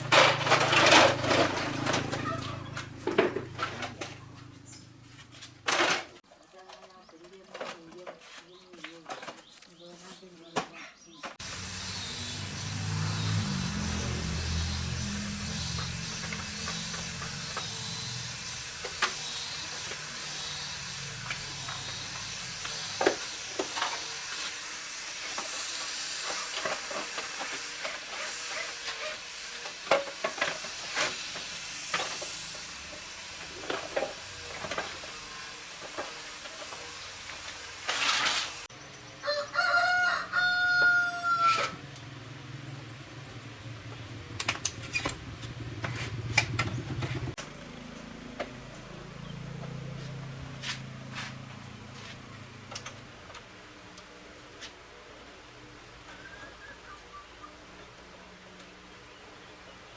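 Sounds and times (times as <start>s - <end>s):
rooster crowing: 39.2s - 41.9s.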